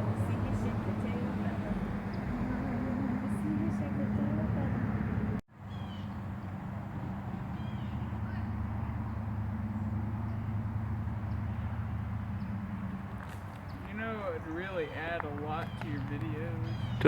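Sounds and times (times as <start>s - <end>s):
vehicle engine rumble: 0.0s - 17.0s.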